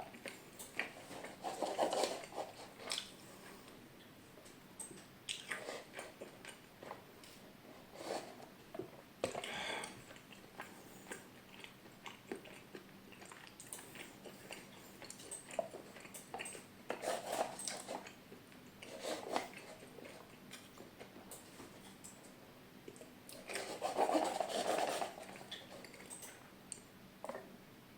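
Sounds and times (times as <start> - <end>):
chewing and biting: 0.0 - 3.6, 4.8 - 7.4, 8.7 - 22.1.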